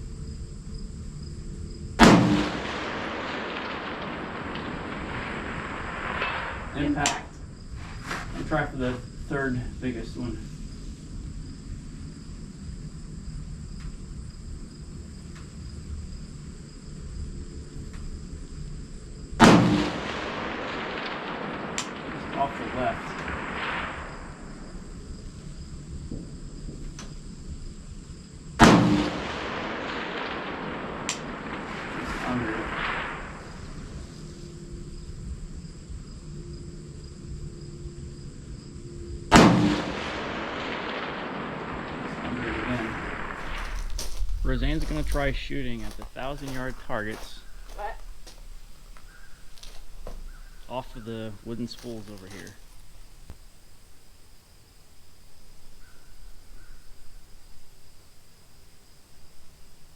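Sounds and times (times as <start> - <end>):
insects chirping: 0.0 - 59.9
rifle shot echoing: 2.0 - 7.5, 19.4 - 24.8, 28.6 - 34.0, 39.3 - 53.3.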